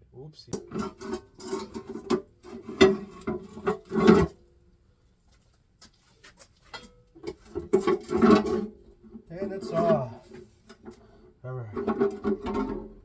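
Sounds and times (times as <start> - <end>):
tools and metal parts clattering: 0.6 - 4.4, 6.5 - 8.8, 11.8 - 13.0.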